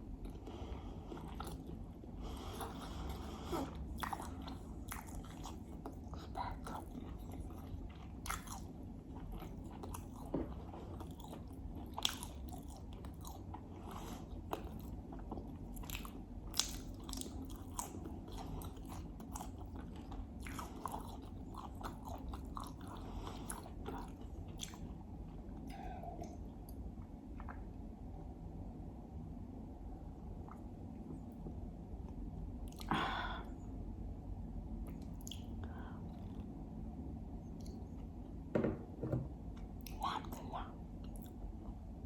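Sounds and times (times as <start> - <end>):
close chewing and biting: 2.5 - 24.9.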